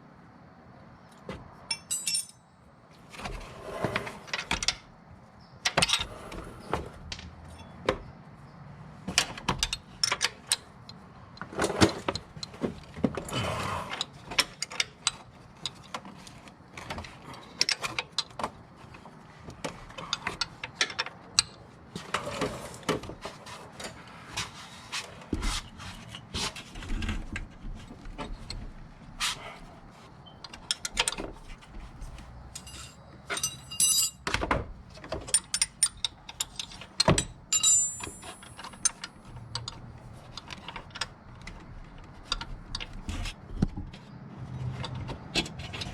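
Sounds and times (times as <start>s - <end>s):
tools and metal parts clinking: 1.6s - 2.5s, 5.6s - 6.1s, 7.1s - 8.1s, 9.2s - 13.0s, 14.0s - 19.0s, 30.2s - 41.6s
short metallic rings: 1.7s - 2.5s, 32.6s - 34.3s, 37.5s - 39.2s.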